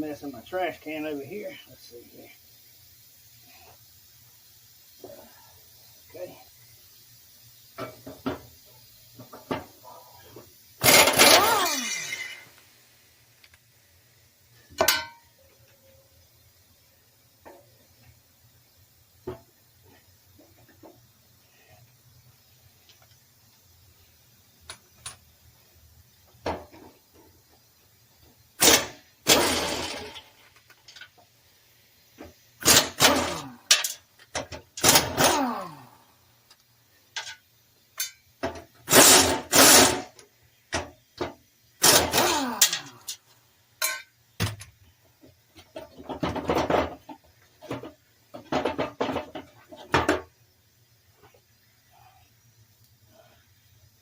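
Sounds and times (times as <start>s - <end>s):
pneumatic air wrench bursts: 10.8s - 12.8s, 28.6s - 30.4s, 32.2s - 34.0s, 34.8s - 35.8s, 38.8s - 40.3s, 41.8s - 43.2s.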